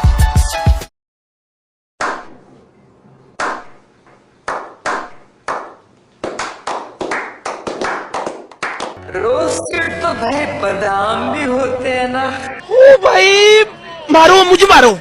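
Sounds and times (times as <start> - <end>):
hand claps: 4.5 - 9.0.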